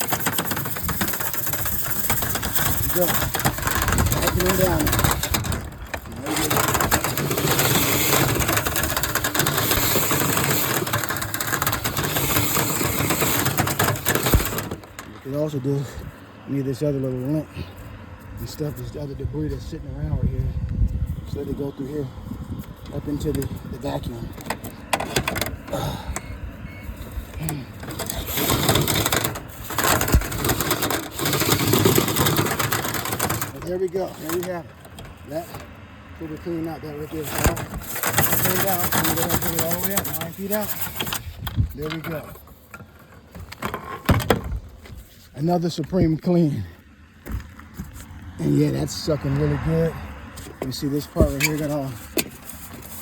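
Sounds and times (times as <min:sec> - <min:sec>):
rotary brush rattling in vent duct: 0:00.0 - 0:16.0, 0:27.0 - 0:46.0, 0:50.4 - 0:53.0.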